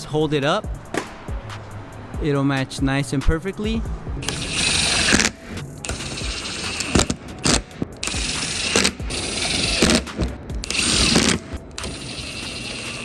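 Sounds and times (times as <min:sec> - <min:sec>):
cordless power tool bursts: 0:04.2 - 0:13.0.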